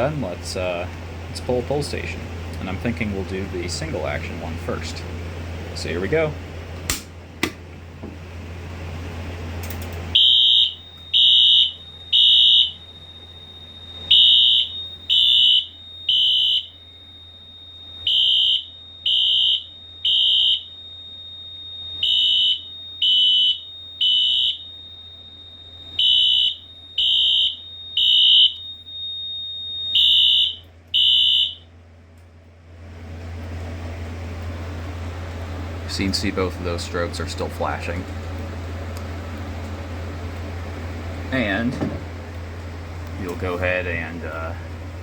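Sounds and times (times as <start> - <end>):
fire alarm pull station clatter: 9.6 - 16.8
alarm horns short high blasts: 10.1 - 13.3, 14.0 - 17.1, 18.0 - 20.8, 22.0 - 24.7, 25.8 - 31.7.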